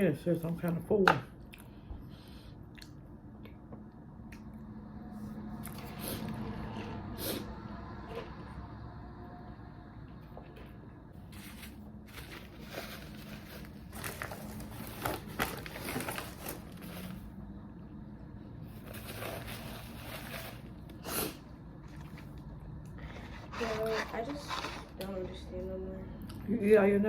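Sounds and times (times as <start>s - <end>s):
food packaging crinkling: 11.3s - 17.3s, 18.7s - 20.9s.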